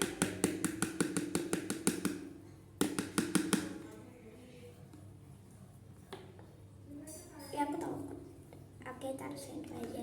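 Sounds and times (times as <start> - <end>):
spoon tapping against a bowl: 0.0 - 3.8.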